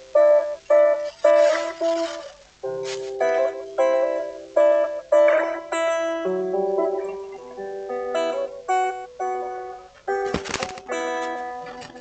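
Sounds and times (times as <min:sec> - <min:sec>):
guitar notes and chords plucked: 0:00.0 - 0:12.0.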